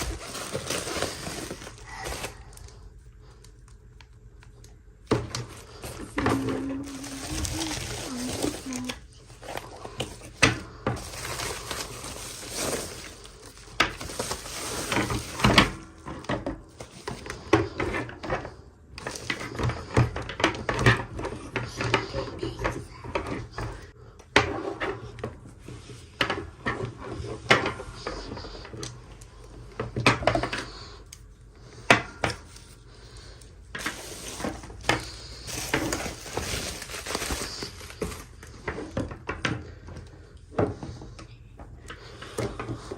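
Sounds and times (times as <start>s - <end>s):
packaging rustling: 0.0s - 4.2s, 5.1s - 15.9s, 16.7s - 17.5s, 32.4s - 38.6s.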